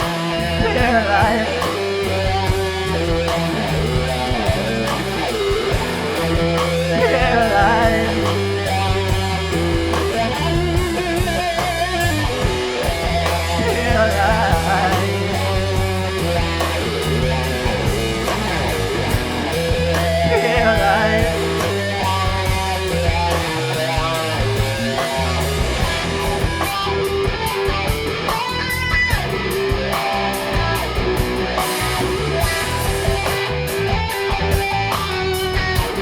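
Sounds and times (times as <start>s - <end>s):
bass guitar: 0.0s - 36.0s
drum kit steady beat: 0.0s - 36.0s
electric guitar lead lines: 0.0s - 36.0s.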